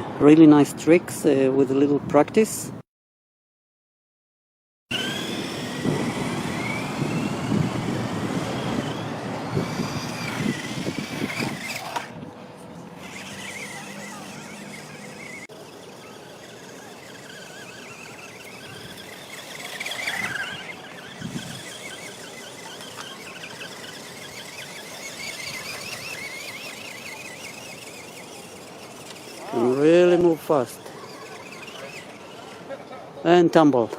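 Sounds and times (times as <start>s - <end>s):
rough rushing noise: 4.9s - 12.2s
rc car motor whining: 4.9s - 33.1s.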